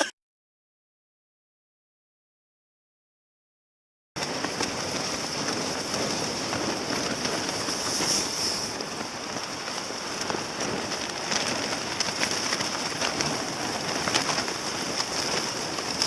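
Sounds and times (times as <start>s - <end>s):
fire hissing: 4.2s - 13.0s
wood fire crackling: 4.2s - 16.0s.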